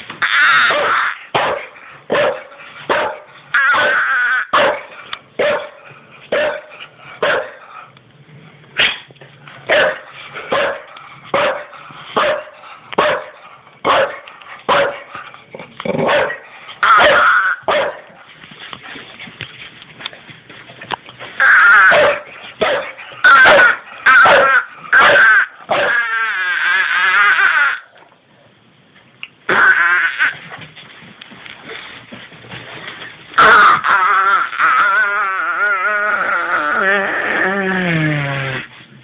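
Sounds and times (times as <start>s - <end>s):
duck noise imitations: 0.2s - 1.4s, 3.5s - 4.6s, 16.8s - 17.7s, 21.4s - 22.1s, 23.2s - 27.9s, 29.5s - 30.5s, 33.4s - 38.0s
dog barking: 0.7s - 7.6s, 9.7s - 15.1s, 16.0s - 18.1s, 21.8s - 26.0s.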